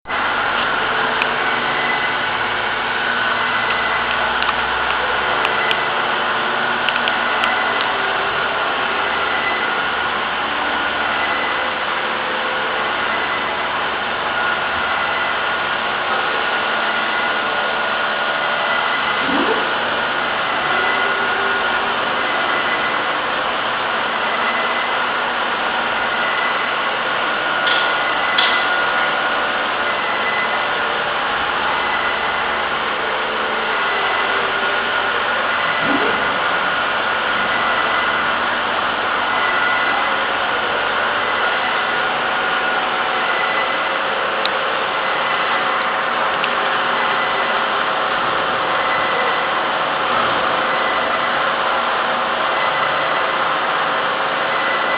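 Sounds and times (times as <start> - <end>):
high machine whines: 0.1 - 54.9
rising whir of moving axis: 19.0 - 19.9.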